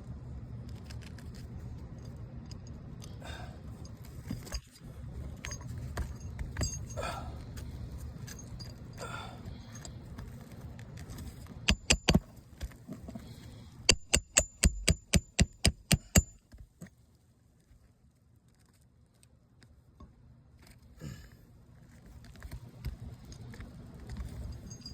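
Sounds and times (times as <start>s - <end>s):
hammer driving nails: 11.7s - 12.2s, 13.9s - 16.4s.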